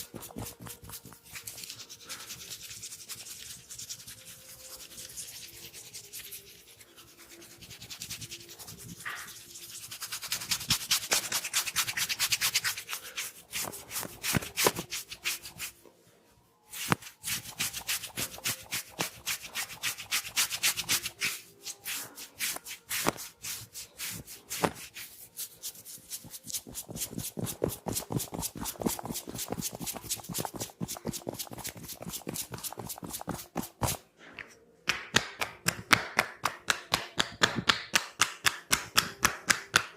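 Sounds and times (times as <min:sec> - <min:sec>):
hands rubbing scalp and hair: 0:00.0 - 0:15.8, 0:16.7 - 0:34.0.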